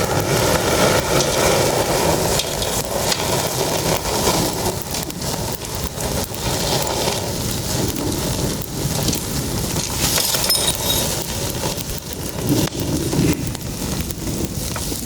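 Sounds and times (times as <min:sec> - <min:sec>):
campfire crackling and sizzling: 0:00.0 - 0:15.0
metallic clink: 0:10.0 - 0:11.2.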